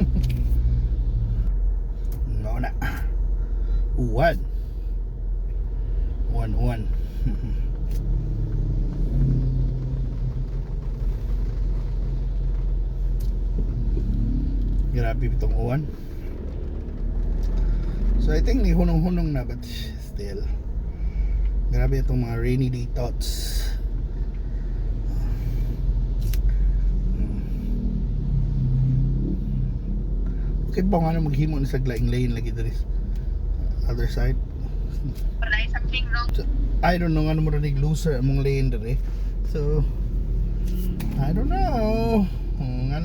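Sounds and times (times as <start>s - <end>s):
car cabin rumble: 0.0s - 28.3s, 28.9s - 43.0s
heavy rain on car: 8.1s - 14.0s.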